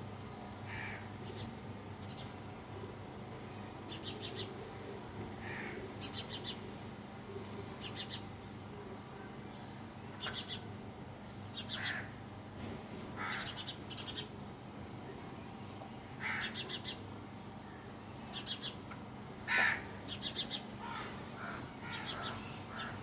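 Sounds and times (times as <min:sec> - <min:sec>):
birds calling: 0:11.5 - 0:12.2, 0:13.2 - 0:14.4, 0:16.2 - 0:17.1, 0:18.3 - 0:23.0.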